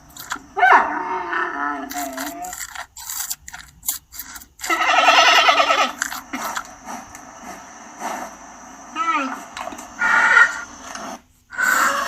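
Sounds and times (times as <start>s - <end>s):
panda bleating call: 4.7s - 6.0s.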